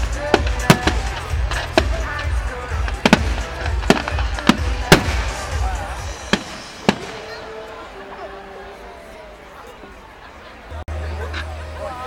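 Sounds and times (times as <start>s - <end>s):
fireworks bangs: 0.0s - 7.7s
music playing: 0.0s - 9.4s, 10.6s - 12.0s.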